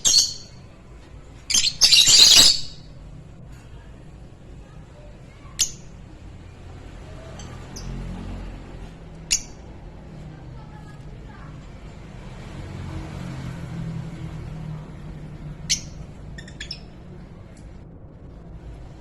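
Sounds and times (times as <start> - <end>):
lovebirds shrill chirps: 0.0 - 0.6, 1.5 - 2.9, 15.7 - 17.0.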